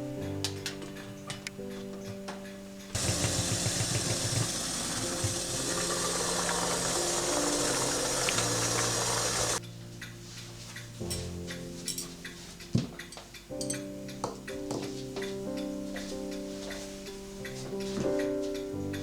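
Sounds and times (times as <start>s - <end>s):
soft background music: 0.0s - 19.0s
blender motor running: 3.0s - 9.6s.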